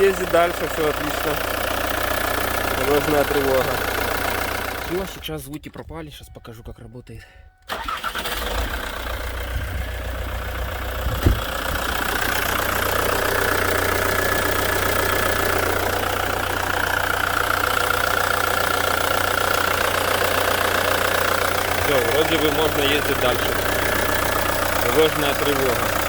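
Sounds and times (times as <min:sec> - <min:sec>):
car engine idling: 0:00.0 - 0:05.5, 0:07.6 - 0:26.0
short sharp engine knock: 0:11.0 - 0:11.9.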